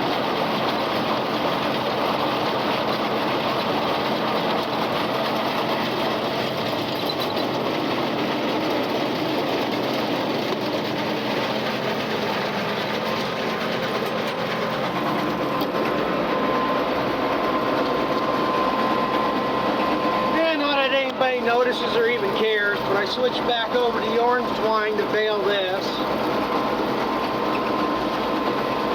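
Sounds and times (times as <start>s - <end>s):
baler mechanical clatter: 0.0s - 28.9s
faint steady whine: 12.9s - 28.9s.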